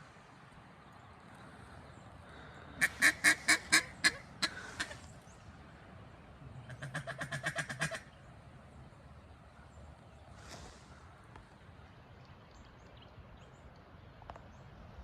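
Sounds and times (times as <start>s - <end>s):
duck quacking: 2.8s - 5.1s, 6.7s - 8.2s.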